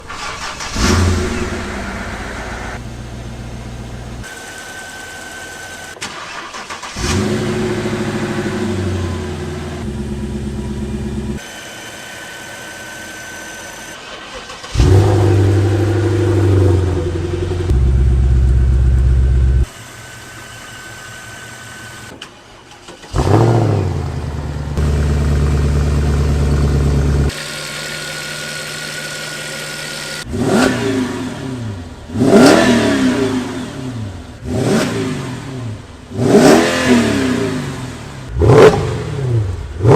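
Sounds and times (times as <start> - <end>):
car engine revving: 0.0 - 4.3, 6.1 - 11.4, 14.3 - 19.7, 23.0 - 39.9
car engine starting and idling: 0.0 - 11.4, 13.9 - 39.9.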